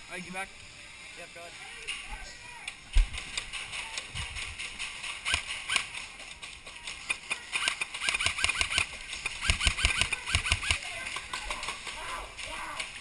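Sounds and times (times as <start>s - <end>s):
airsoft gun shots: 7.6s - 10.8s.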